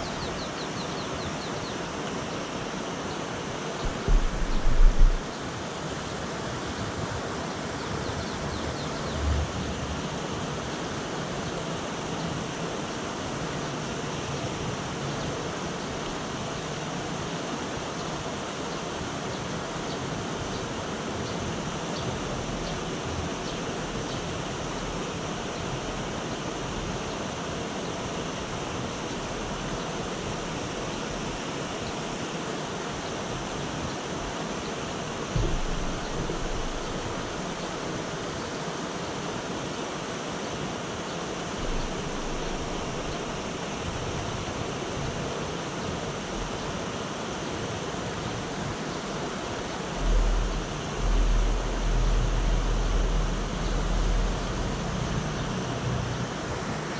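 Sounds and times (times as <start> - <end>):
low thump: 3.8 - 5.3, 35.4 - 37.9, 50.0 - 54.4
rain falling: 35.2 - 38.3.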